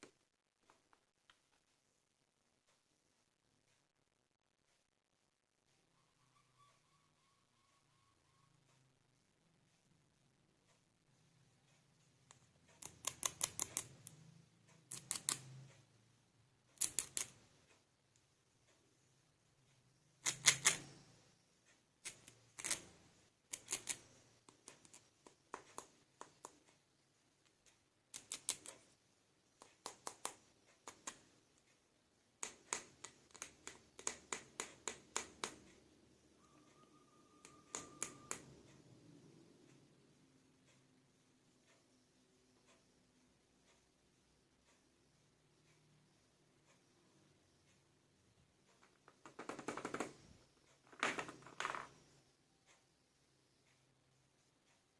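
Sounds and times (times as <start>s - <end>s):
plastic toy pieces clicking: 12.8s - 14.1s, 16.8s - 17.4s, 22.0s - 25.0s
plastic toy figures clicking: 12.8s - 14.2s, 16.8s - 17.5s, 22.0s - 26.6s, 48.8s - 52.0s.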